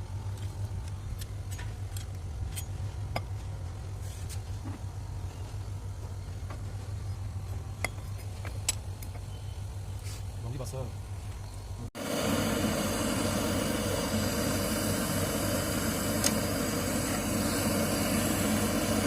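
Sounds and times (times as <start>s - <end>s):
electric motor humming: 12.0s - 19.0s.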